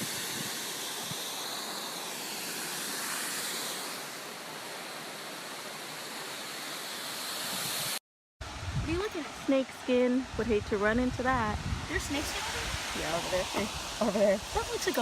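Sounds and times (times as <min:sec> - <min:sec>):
waterfall pouring over a dam: 0:00.0 - 0:08.0, 0:11.9 - 0:15.0.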